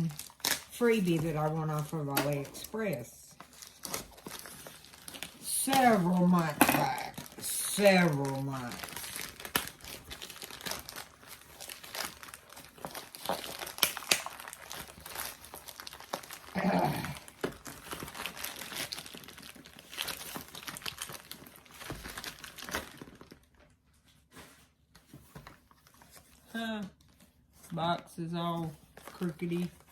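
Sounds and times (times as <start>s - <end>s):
packaging crinkling: 0.0s - 24.6s.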